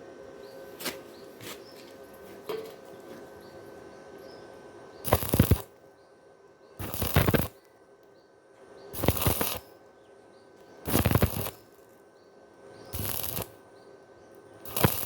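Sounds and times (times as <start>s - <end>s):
quiet hum: 0.0s - 15.0s
crackling welding arc: 5.0s - 5.8s, 6.8s - 7.6s, 9.0s - 9.7s, 10.8s - 12.0s, 12.9s - 13.6s, 14.6s - 15.0s.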